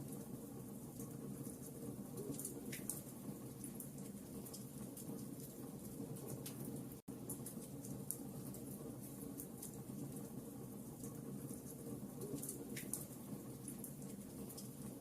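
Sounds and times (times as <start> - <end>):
wood fire crackling: 0.0 - 15.0
fire pops and snaps: 11.0 - 14.8.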